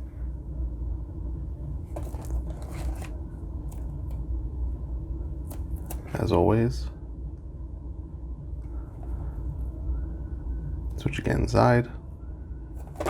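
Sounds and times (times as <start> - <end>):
steady low hum: 0.0 - 13.0
cardboard box scraping and rustling: 2.0 - 3.2.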